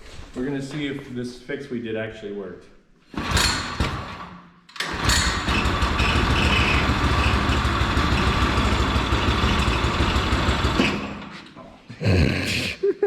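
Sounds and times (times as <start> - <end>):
small gas engine running: 4.8 - 11.3.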